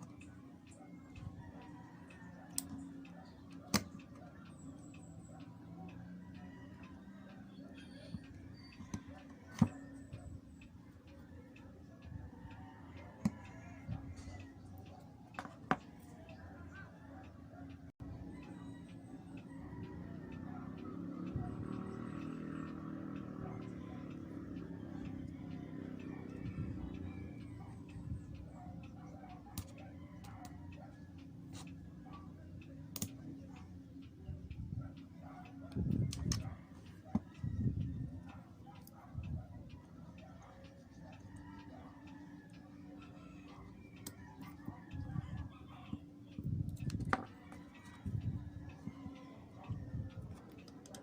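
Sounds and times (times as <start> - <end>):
small clicks and taps: 0.0 - 16.9, 17.7 - 51.0
clicks and taps of small tools: 2.5 - 4.8, 8.1 - 10.2, 13.2 - 16.4, 32.9 - 33.7, 35.7 - 37.9, 43.9 - 49.2.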